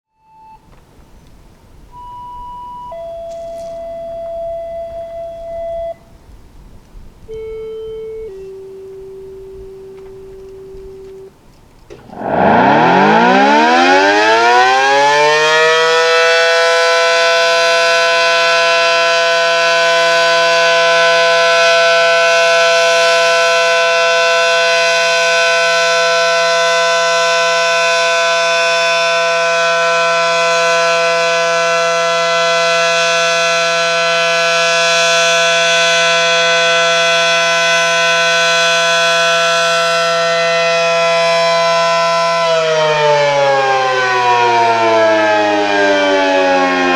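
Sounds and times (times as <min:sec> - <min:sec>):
tornado siren steady tone: 0:01.8 - 0:46.9.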